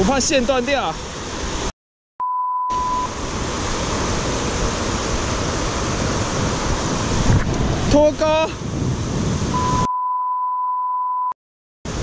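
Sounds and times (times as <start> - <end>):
wind and water rushing: 0.0 - 1.7, 2.7 - 9.9
short beep: 2.2 - 3.1, 9.6 - 11.4.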